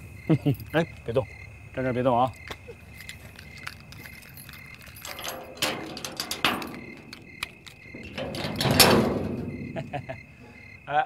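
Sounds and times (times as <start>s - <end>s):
keys jangling: 2.8s - 10.2s
door lock rattling and clicking: 3.1s - 10.3s.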